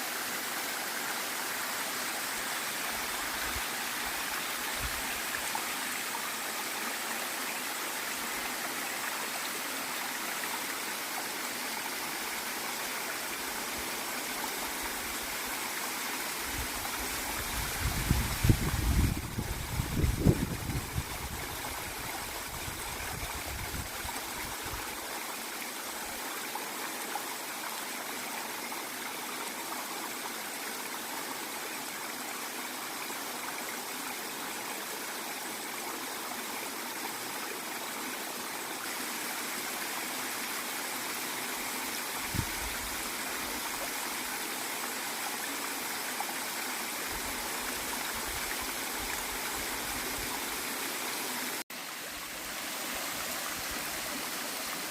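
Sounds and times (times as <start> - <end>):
waterfall rushing: 0.0 - 11.6, 46.8 - 54.9.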